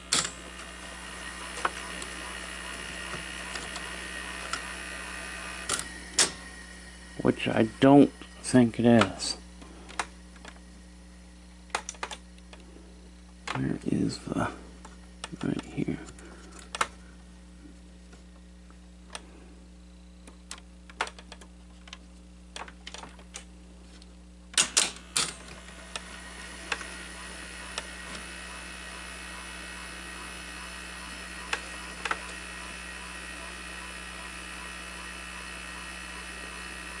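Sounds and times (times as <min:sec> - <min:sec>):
video recorder motors whirring: 0:00.0 - 0:23.4, 0:24.0 - 0:37.0.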